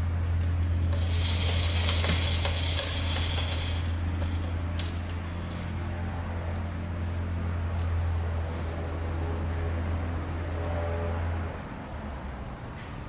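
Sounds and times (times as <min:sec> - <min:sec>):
low machine hum: 0:00.0 - 0:08.3
ringing metallic whine: 0:00.6 - 0:05.9.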